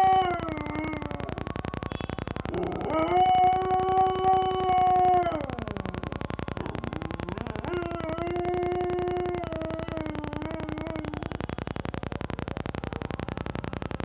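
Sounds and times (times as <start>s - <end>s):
dog howling whine: 0.0s - 1.4s, 2.5s - 6.0s, 6.6s - 11.2s.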